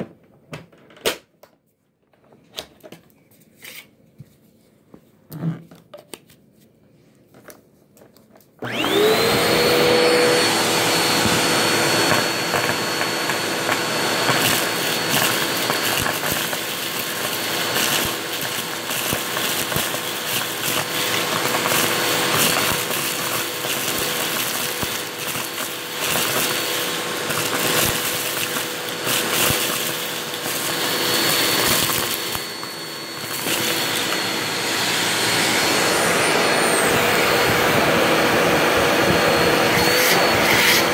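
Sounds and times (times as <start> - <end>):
vacuum cleaner running: 8.6 - 40.9.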